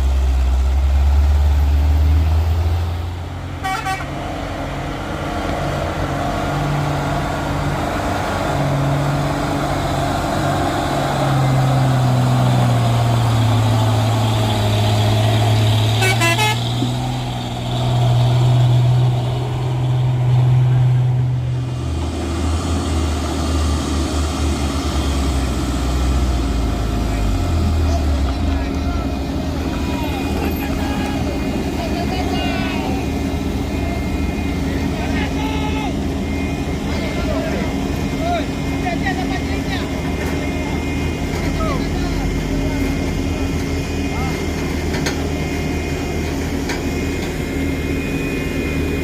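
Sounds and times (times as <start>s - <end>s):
truck diesel engine pulling: 0.0s - 49.0s
truck horn toots: 3.5s - 4.3s, 15.9s - 16.8s.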